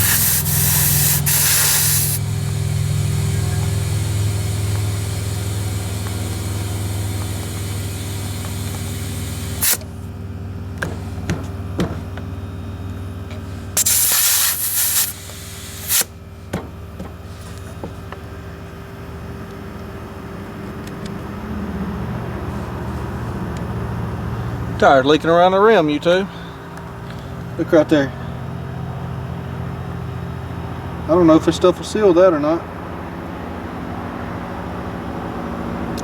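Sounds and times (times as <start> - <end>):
compressed air hissing: 0.0 - 10.0, 13.5 - 16.2
steady low hum: 0.0 - 31.4.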